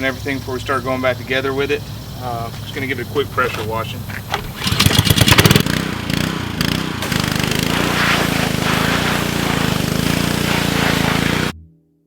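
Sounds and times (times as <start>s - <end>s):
pressure washer engine starting: 2.8s - 11.6s.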